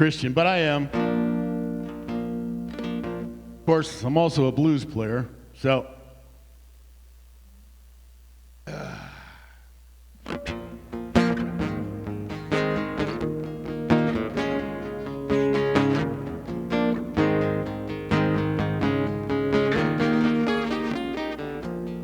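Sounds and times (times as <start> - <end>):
guitar playing: 0.0 - 5.0, 10.2 - 22.0.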